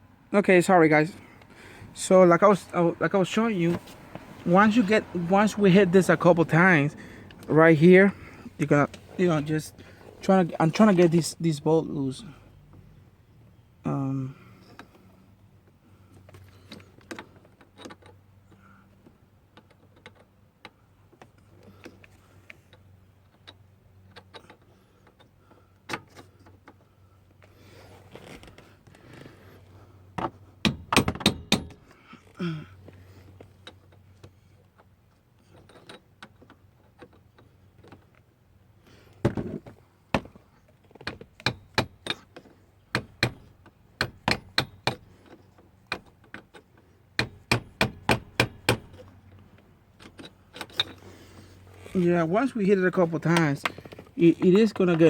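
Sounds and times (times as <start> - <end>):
metallic knocks on bolts: 30.2 - 31.8, 42.9 - 45.1, 47.2 - 49.0.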